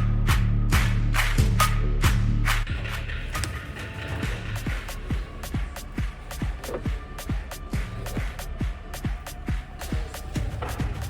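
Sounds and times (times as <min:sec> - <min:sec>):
electronic dance music: 0:02.7 - 0:11.0.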